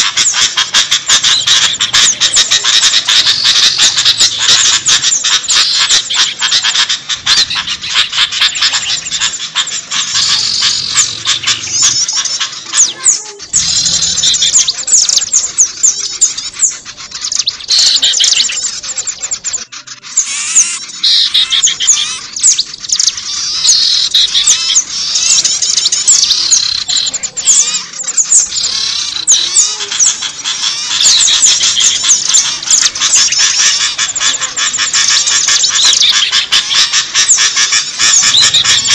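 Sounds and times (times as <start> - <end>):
songbirds chirping: 0.0 - 38.9.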